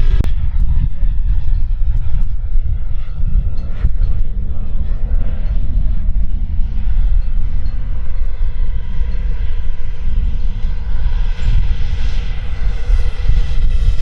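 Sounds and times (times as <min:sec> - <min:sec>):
model jet turbine flying past: 0:00.0 - 0:14.0.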